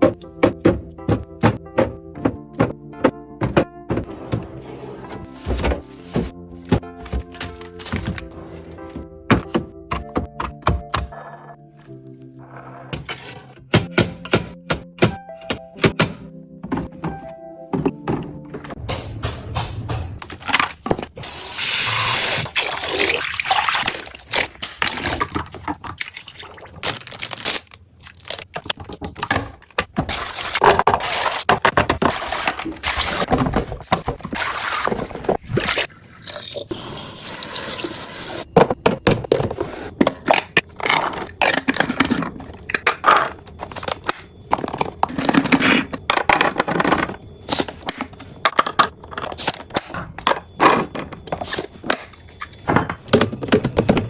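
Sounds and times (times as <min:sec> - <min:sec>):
liquid pouring into containers: 0:22.4 - 0:24.2.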